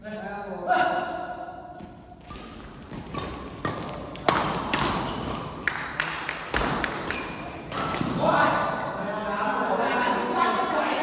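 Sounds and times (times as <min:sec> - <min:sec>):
ball being struck and bouncing: 0:02.3 - 0:05.6, 0:06.5 - 0:08.3.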